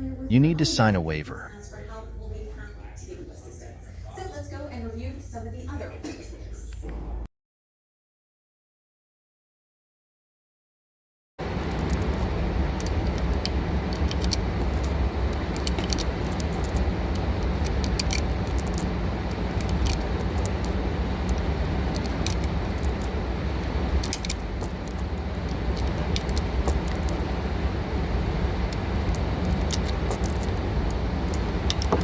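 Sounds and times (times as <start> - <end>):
steady low rumble: 11.4 - 32.0.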